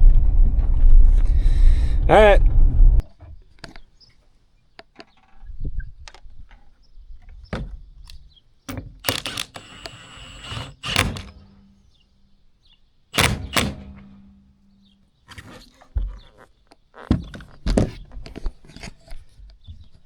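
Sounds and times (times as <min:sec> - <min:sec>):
knocks and thuds: 0:13.2 - 0:14.2, 0:17.1 - 0:18.2.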